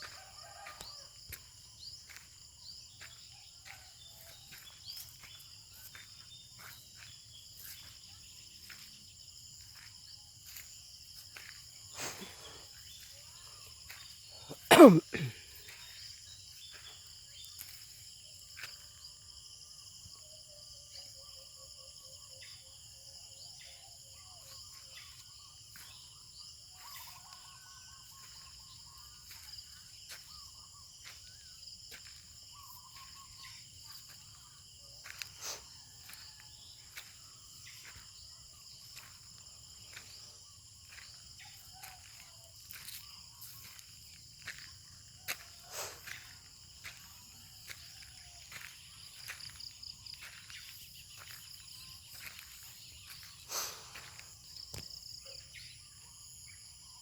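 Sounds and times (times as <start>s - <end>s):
insects chorus: 0.0s - 57.0s
birds trilling and warbling: 23.6s - 54.8s.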